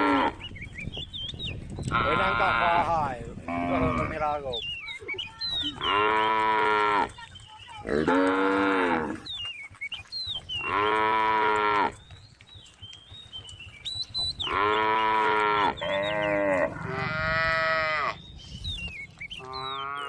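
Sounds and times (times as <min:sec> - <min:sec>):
cows mooing: 0:00.0 - 0:00.4, 0:01.9 - 0:04.4, 0:05.6 - 0:07.2, 0:07.8 - 0:09.3, 0:10.6 - 0:12.0, 0:14.4 - 0:18.2, 0:19.4 - 0:20.0.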